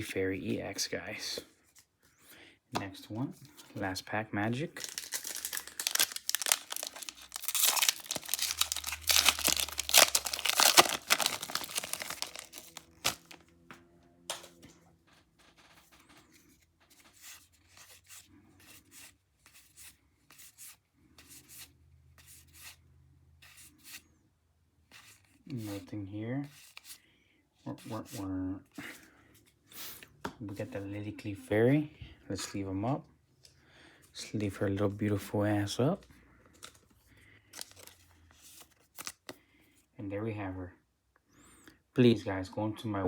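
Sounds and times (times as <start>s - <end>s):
cards clicking and rustling: 4.8s - 13.4s, 36.5s - 36.9s, 37.5s - 39.4s
foil pack tearing and crinkling: 4.8s - 13.4s, 37.6s - 38.0s, 38.8s - 39.3s.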